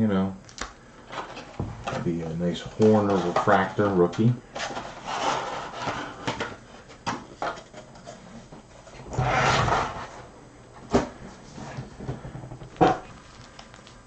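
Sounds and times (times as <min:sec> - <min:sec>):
packaging rustling and tearing: 0:12.6 - 0:14.0.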